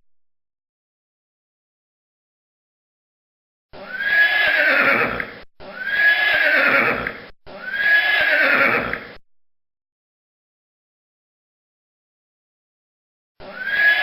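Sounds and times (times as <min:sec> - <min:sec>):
horse whinnying: 0:03.8 - 0:09.2, 0:13.4 - 0:14.0.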